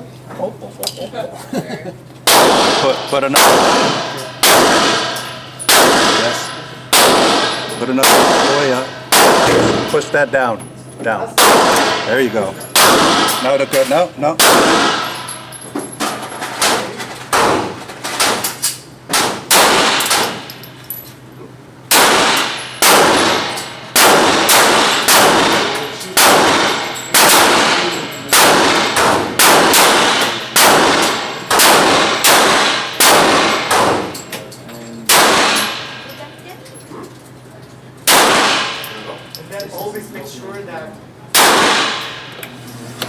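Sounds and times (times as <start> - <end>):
handgun shots echoing: 2.3 - 10.1, 11.4 - 13.8, 14.4 - 15.5, 16.6 - 20.5, 21.9 - 34.3, 35.1 - 36.1, 38.0 - 39.4, 41.3 - 42.3.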